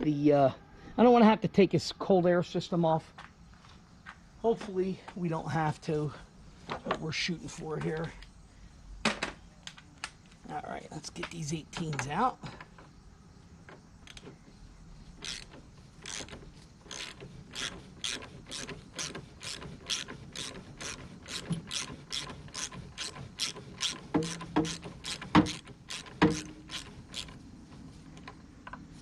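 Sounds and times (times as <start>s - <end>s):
hand ratchet clicking: 15.2s - 27.4s.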